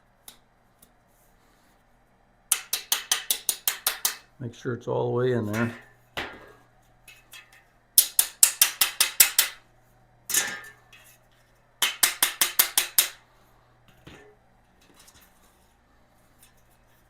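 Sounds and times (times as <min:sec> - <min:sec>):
small hammer tapping: 0:02.5 - 0:04.2, 0:08.0 - 0:09.6, 0:11.8 - 0:13.2.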